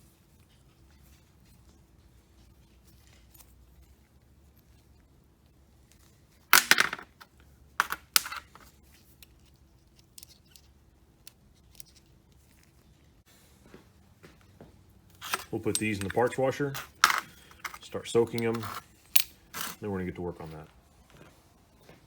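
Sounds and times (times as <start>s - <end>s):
metal parts clattering: 6.6s - 7.2s, 7.8s - 8.7s, 15.2s - 19.8s.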